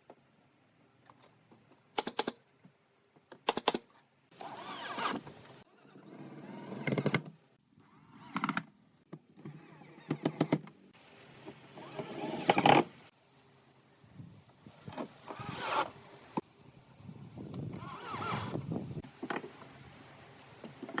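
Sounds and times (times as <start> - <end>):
small electric motor running: 4.4 - 5.2, 17.8 - 18.6.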